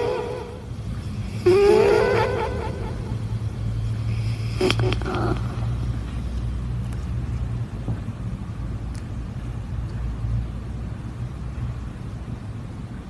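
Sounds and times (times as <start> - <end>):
cat crying: 0.0 - 0.7, 1.4 - 3.3.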